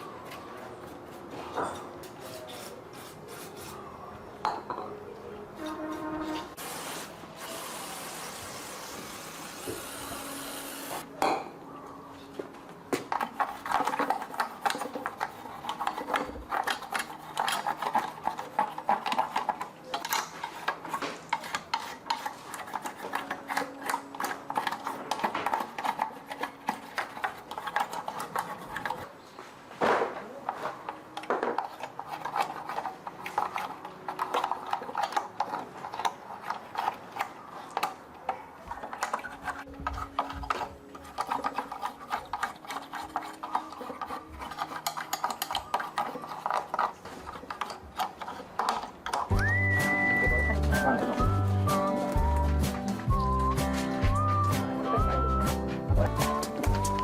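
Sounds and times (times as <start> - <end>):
metallic scraping and clinking: 38.8 - 49.5.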